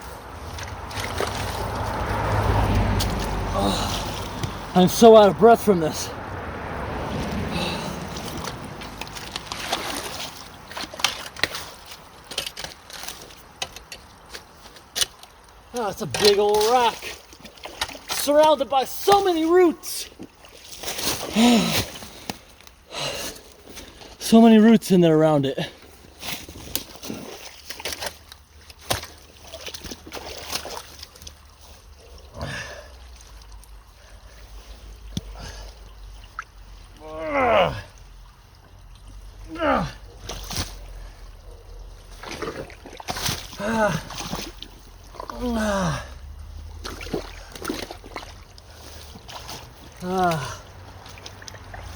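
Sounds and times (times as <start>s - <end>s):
water sloshing and splashing: 0.0s - 51.9s.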